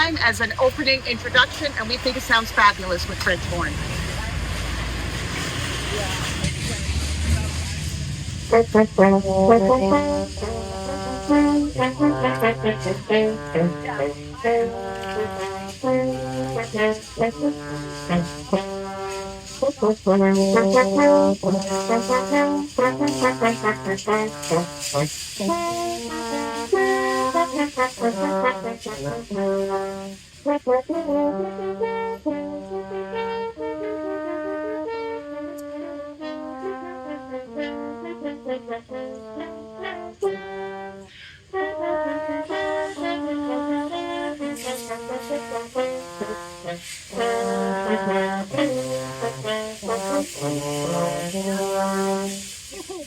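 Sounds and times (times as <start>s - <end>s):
french horn duet: 0.0s - 53.0s.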